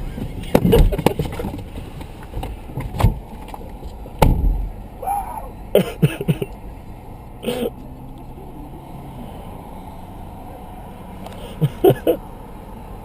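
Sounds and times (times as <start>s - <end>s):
car door thumping shut: 0.5s - 1.2s, 4.2s - 4.7s
person shouting and yelping: 5.0s - 5.6s.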